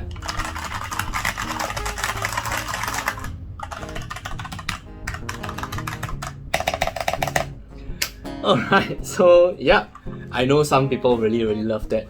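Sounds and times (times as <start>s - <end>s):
fast typing on mechanical keyboard: 0.0s - 7.5s.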